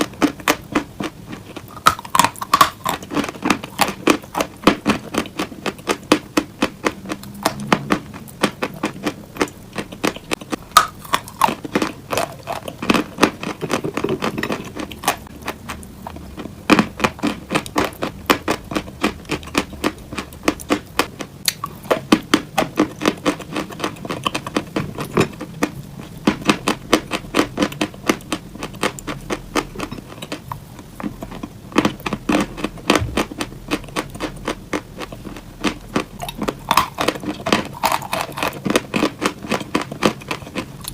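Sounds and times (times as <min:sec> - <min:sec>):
fake eating crunching: 0:00.0 - 0:40.9.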